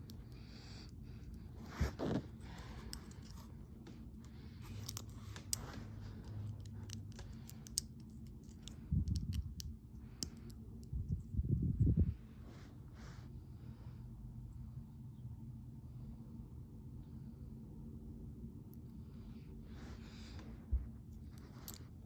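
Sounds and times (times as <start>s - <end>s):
plastic pieces clicking together: 4.7s - 10.9s.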